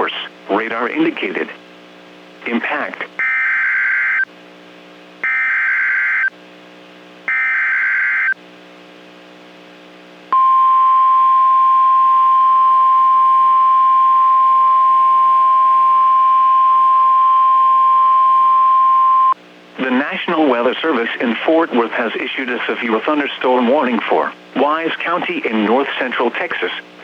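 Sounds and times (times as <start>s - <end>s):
steady warning alarm tone: 5.2s - 6.3s, 7.3s - 8.4s.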